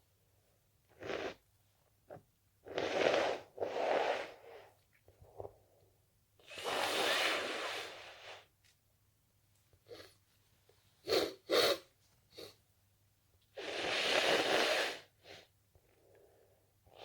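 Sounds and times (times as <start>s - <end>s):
sniffing through nose: 1.0s - 1.4s, 2.6s - 4.7s, 6.4s - 8.5s, 11.0s - 12.6s, 13.6s - 15.5s.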